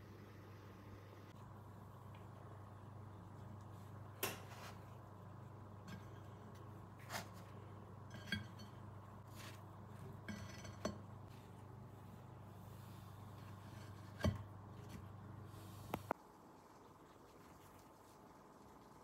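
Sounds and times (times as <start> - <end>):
steady low hum: 0.0 - 17.2
dishes and utensils clinking: 5.8 - 11.3.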